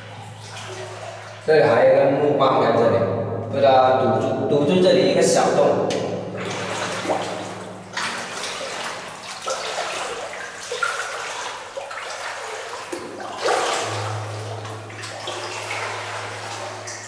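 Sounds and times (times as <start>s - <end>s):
footsteps wading through water: 0.0s - 1.5s, 5.9s - 17.0s
steady low hum: 0.0s - 17.0s.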